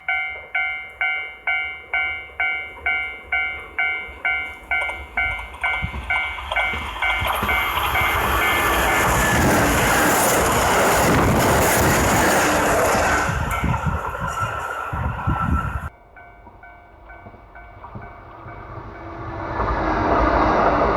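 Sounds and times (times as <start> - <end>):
level crossing warning bell: 0.0 - 11.1, 15.8 - 19.1
train passing: 0.0 - 20.9.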